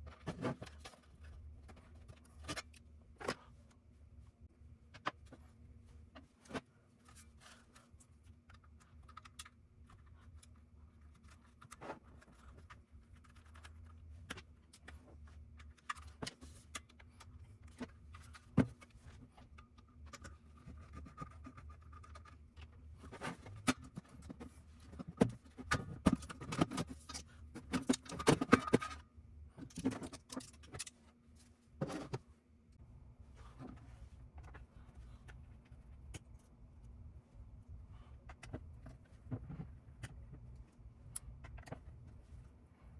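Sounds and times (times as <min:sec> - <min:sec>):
faint steady hum: 0:00.0 - 0:42.9
small parts and tools clicking: 0:07.1 - 0:22.8, 0:29.6 - 0:31.1.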